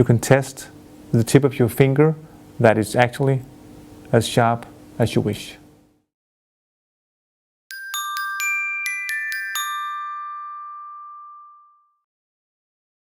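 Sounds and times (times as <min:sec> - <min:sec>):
mallet percussion chime jingle: 0:07.7 - 0:12.1.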